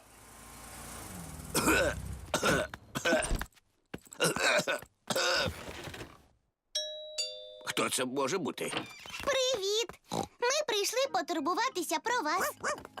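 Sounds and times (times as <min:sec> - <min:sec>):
cartoon character coughing: 0:01.5 - 0:03.4, 0:04.2 - 0:05.5.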